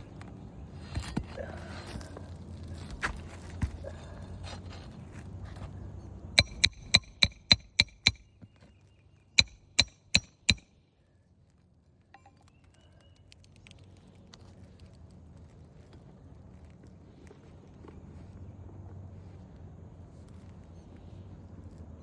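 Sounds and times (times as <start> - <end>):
soft rustling and scraping: 0.7 - 5.9
hammer driving nails: 6.4 - 8.3, 9.4 - 10.6.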